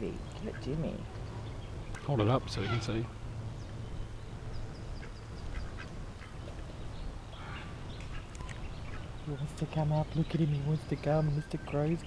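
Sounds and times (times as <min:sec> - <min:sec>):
duck quacking: 0:02.0 - 0:03.1.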